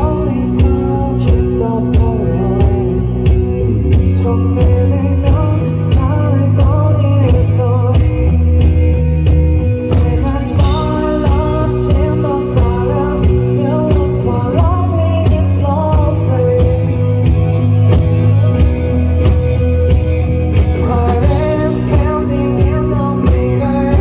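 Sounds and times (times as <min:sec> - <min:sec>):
person singing: 0:00.0 - 0:08.5, 0:09.7 - 0:19.8, 0:20.6 - 0:24.0
rock band playing live: 0:00.0 - 0:24.0.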